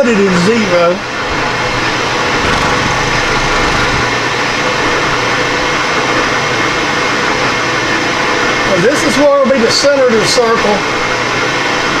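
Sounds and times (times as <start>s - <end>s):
milling machine humming: 1.7s - 4.3s.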